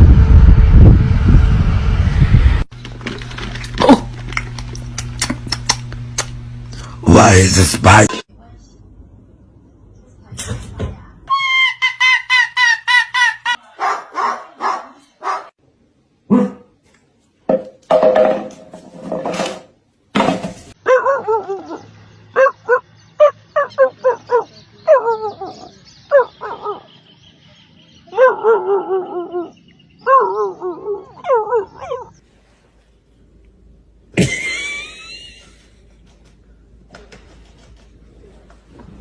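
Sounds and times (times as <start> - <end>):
dog barking and whining: 13.6 - 15.5, 16.3 - 16.7, 20.8 - 26.9, 28.1 - 32.2.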